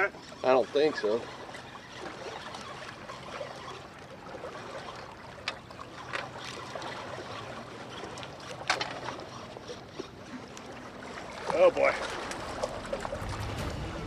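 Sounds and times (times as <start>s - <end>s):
water washing against shore: 10.3s - 14.0s.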